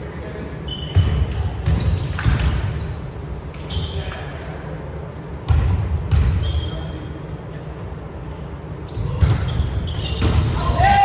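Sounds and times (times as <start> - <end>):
shoes squeaking on court: 0.7 - 5.2, 6.1 - 7.1, 8.8 - 10.9
players' voices: 6.4 - 11.0.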